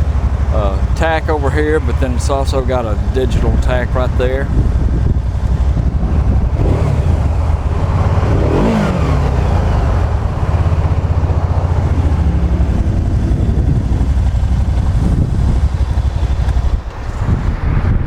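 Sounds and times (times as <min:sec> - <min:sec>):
engine throttle blip: 0:00.0 - 0:18.0
motorcycle engine idling: 0:00.0 - 0:18.0.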